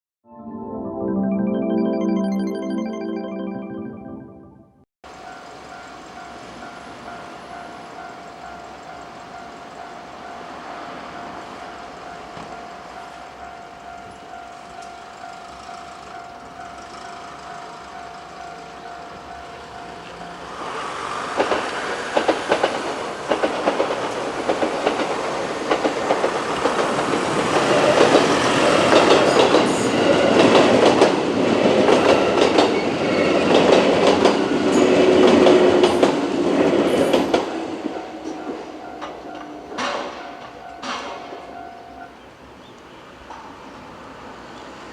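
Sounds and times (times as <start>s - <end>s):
crossing warning bell ringing: 5.1s - 21.6s, 22.5s - 42.3s
electric train passing: 5.1s - 44.9s
wheels clicking over rail joints: 12.2s - 41.5s.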